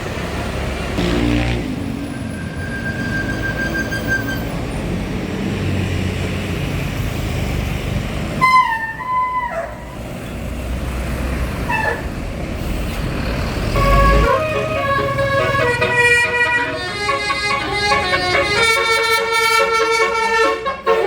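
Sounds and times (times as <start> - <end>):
bus engine rumbling: 0.0 - 21.0
multi-tone horn melody: 13.7 - 21.0.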